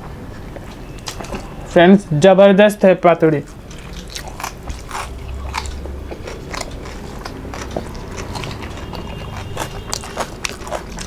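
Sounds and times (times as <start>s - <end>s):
chewing and mouth smacking: 0.4s - 1.6s, 3.4s - 11.0s.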